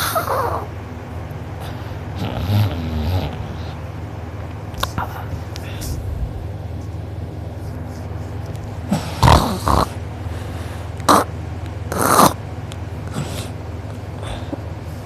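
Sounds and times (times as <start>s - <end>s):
steady low hum: 0.0s - 15.0s
person snoring loudly: 1.6s - 3.8s, 8.9s - 10.0s, 11.9s - 12.4s.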